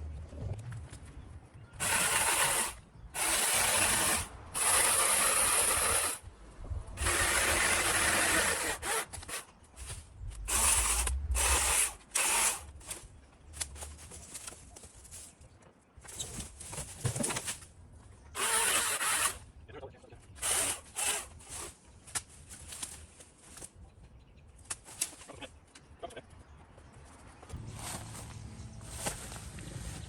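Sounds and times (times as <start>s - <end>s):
saw rasping through branch: 1.8s - 6.2s, 7.0s - 13.0s, 20.4s - 21.8s.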